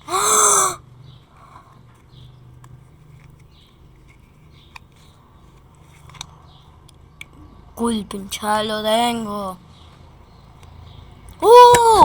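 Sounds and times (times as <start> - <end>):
boy crying out: 0.0 - 0.8, 11.4 - 12.0.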